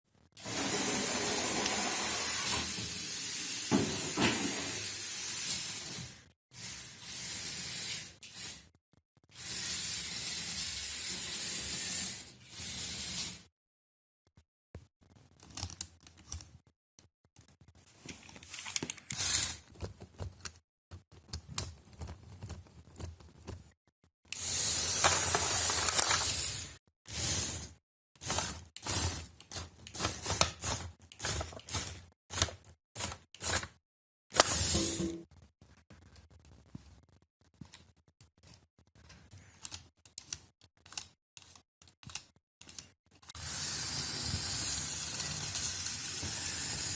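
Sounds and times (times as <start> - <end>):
toy tracked vehicle motor hiss: 4.8 - 8.6, 9.4 - 13.5, 19.1 - 19.6, 24.4 - 27.6, 43.4 - 46.9
scattered clicks and crackles: 14.3 - 24.4, 35.3 - 43.4.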